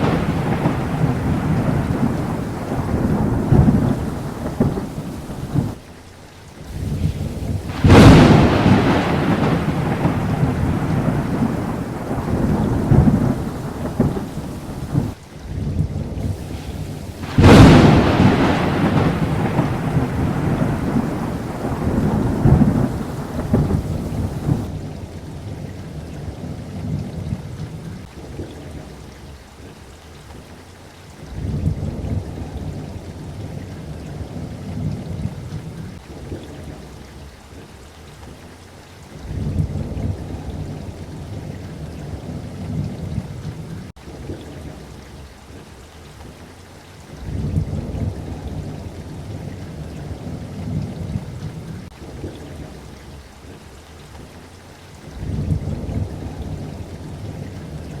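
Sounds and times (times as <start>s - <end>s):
rolling thunder: 0.0s - 5.8s, 6.7s - 25.0s, 55.2s - 58.0s
steady rain: 0.0s - 58.0s.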